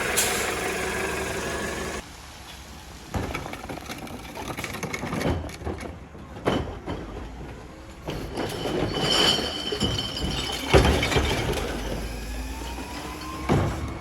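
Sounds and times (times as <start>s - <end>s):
garbage truck low hum: 0.0s - 3.0s, 6.0s - 14.0s
metal clanks: 1.9s - 12.0s.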